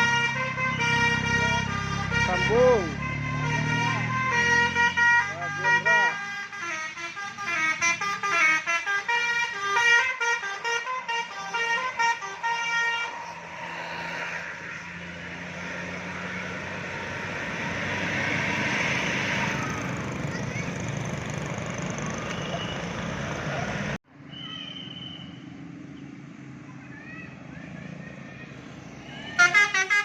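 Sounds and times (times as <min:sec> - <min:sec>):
musical bus horn: 0:00.0 - 0:13.4, 0:29.3 - 0:30.0
passing bus rushing: 0:00.0 - 0:24.0, 0:24.8 - 0:30.0.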